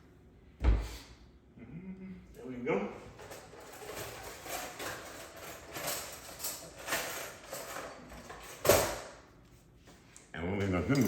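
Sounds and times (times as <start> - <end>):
kitchen utensils tapping and scraping: 3.2 - 9.0.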